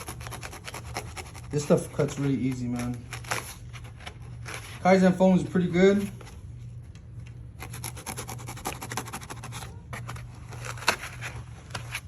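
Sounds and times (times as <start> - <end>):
blade cutting foam: 7.6 - 9.6.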